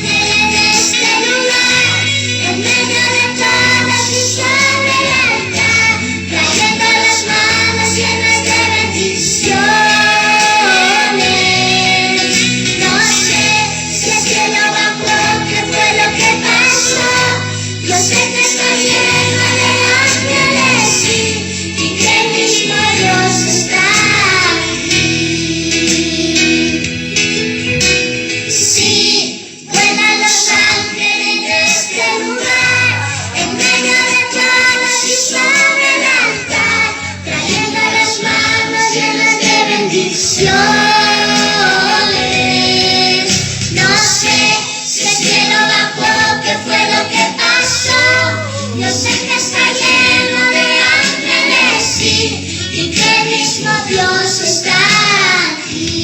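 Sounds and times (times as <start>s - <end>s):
girl singing worship song: 0.0s - 26.9s, 28.5s - 56.0s
instrumental accompaniment: 0.0s - 56.0s.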